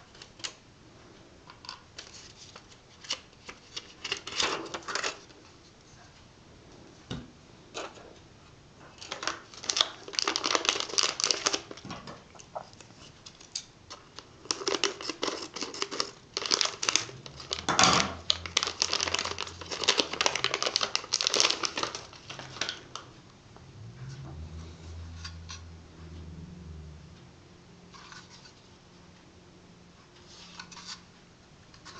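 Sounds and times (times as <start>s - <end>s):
crinkling and rustling handling: 1.5s - 7.1s, 8.8s - 23.1s.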